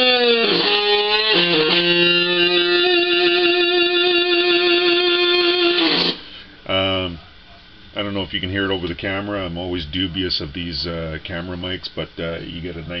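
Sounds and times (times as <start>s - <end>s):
distorted electric guitar: 0.0s - 7.2s.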